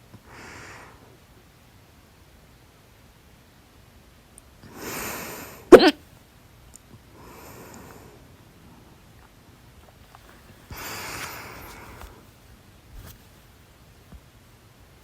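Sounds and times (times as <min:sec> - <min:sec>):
woman hiccuping: 0:05.7 - 0:06.0
soft breathing: 0:07.1 - 0:08.9, 0:10.0 - 0:13.6.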